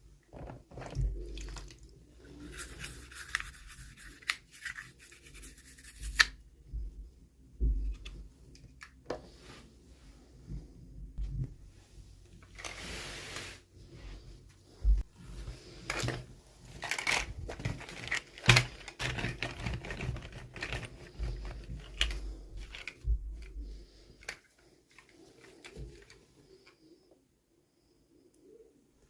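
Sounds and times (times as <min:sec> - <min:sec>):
packaging scraping and rustling: 0:12.4 - 0:13.6, 0:15.6 - 0:26.3.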